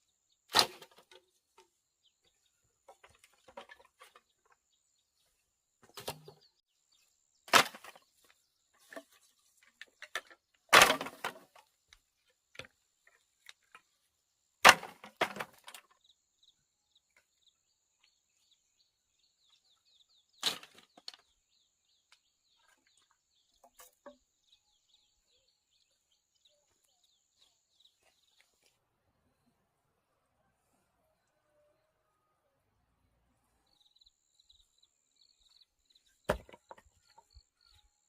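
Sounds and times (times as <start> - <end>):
wood knocking and cracking: 36.3 - 37.2.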